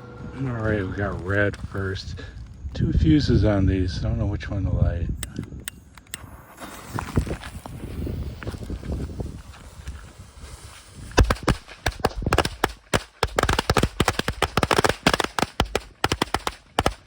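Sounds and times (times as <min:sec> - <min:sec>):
firecrackers banging rapidly: 0:10.7 - 0:17.0.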